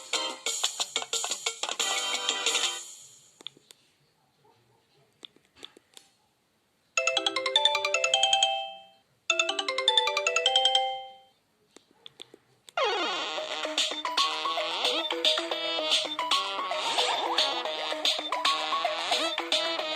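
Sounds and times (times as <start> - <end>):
bell-like phone alert tone: 7.0 - 11.3, 13.4 - 19.9.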